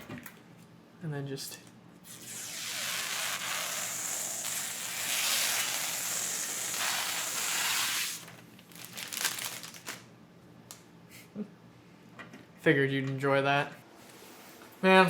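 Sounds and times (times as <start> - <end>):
plastic film peeling: 2.1 - 10.1.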